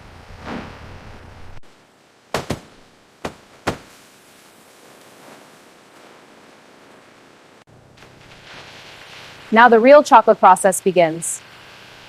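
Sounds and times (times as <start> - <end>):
faint steady hiss: 1.4 - 12.0
sharp knocks: 2.3 - 3.9.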